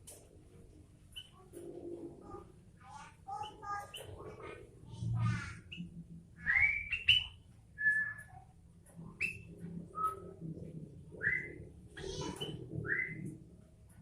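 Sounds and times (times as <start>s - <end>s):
bird whistled notes: 6.4s - 8.3s, 9.2s - 10.2s, 12.4s - 13.3s.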